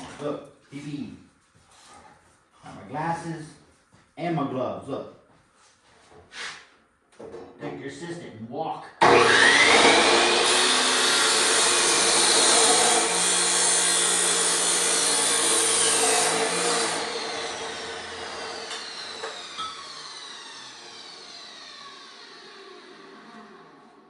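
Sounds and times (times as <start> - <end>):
power tool cutting steel: 9.0 - 24.0.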